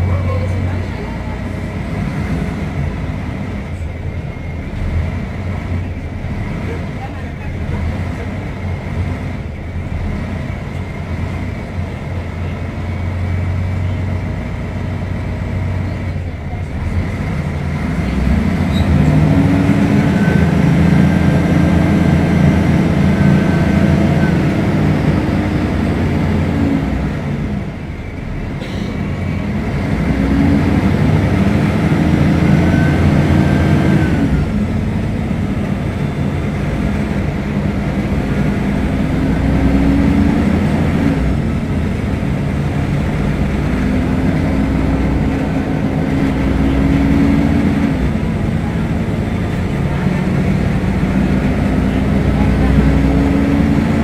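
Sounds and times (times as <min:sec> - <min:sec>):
bus diesel engine accelerating: 0:00.0 - 0:54.0.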